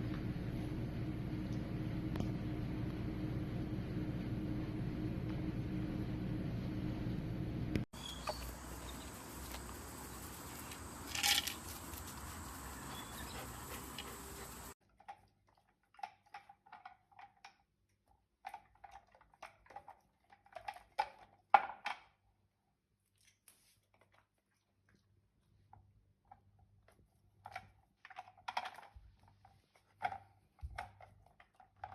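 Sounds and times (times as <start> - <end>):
rustle: 8.0 - 14.8
dog crunching food: 8.3 - 12.7.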